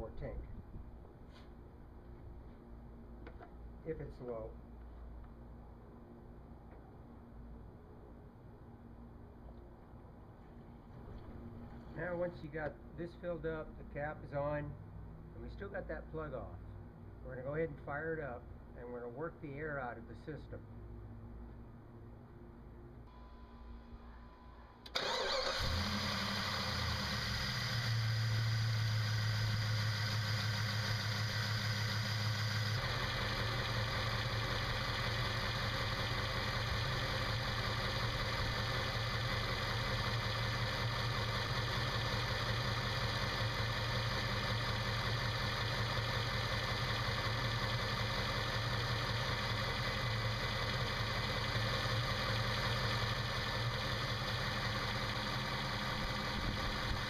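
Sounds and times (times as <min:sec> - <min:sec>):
car engine idling: 0:25.0 - 0:57.0.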